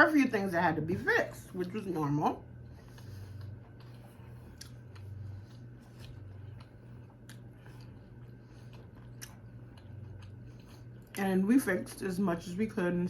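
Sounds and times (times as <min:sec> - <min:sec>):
low steady hum: 0:00.0 - 0:13.0
mouth clicks and chewing: 0:02.8 - 0:11.2.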